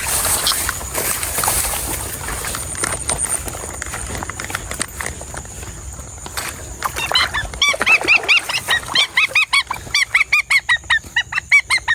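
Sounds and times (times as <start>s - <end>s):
rustling: 0.0s - 5.5s
bird squawking: 7.0s - 11.9s.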